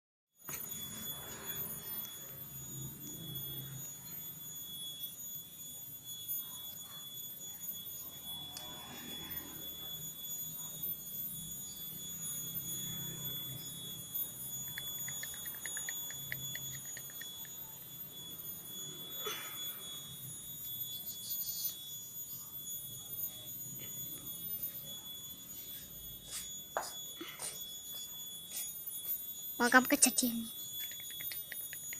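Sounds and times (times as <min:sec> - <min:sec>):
steady high-pitched tone: 0:00.4 - 0:31.9.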